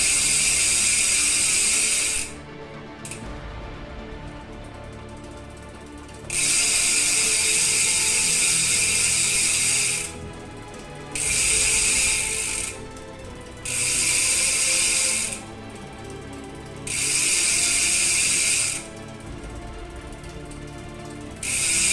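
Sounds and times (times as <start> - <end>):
bicycle freehub ratcheting buzz: 0.0 - 2.4, 6.3 - 10.5, 11.1 - 18.9, 21.4 - 21.9.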